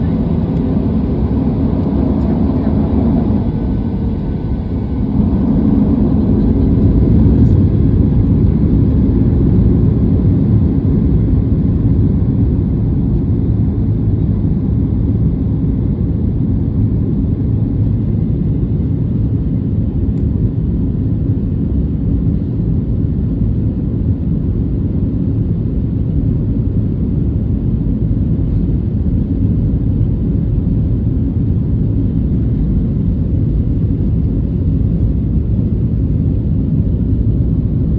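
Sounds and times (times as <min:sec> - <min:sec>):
jet engines roaring at takeoff: 0:00.0 - 0:37.9.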